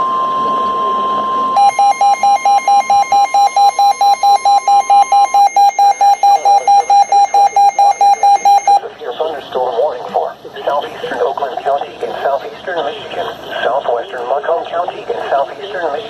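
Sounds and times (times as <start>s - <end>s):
electronic alarm beeping rapidly: 0.0s - 8.8s
faint steady tone: 0.0s - 8.8s.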